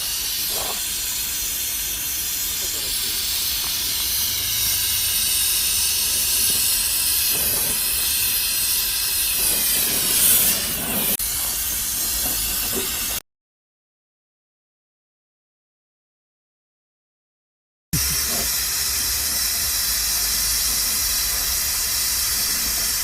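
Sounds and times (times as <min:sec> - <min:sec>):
jet hissing: 0:00.0 - 0:13.2, 0:18.0 - 0:23.0.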